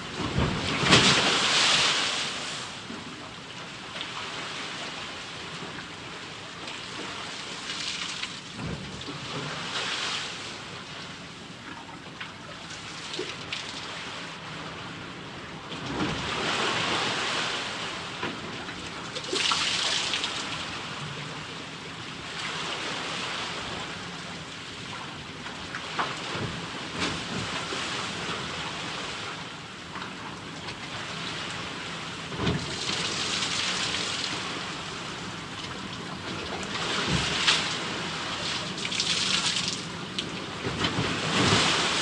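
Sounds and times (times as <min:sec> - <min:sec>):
rushing water hiss: 0:37.3 - 0:40.0.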